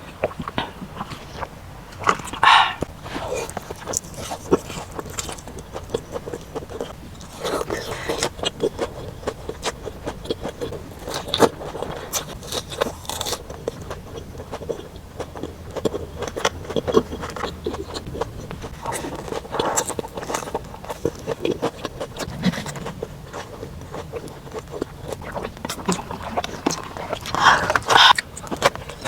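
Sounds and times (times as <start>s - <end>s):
biting and chewing: 0.0s - 29.0s.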